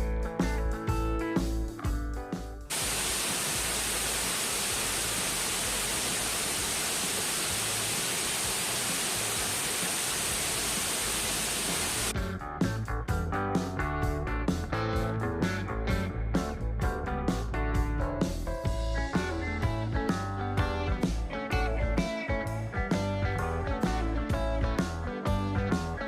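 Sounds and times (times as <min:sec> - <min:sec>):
steady rushing noise: 0:02.7 - 0:12.1.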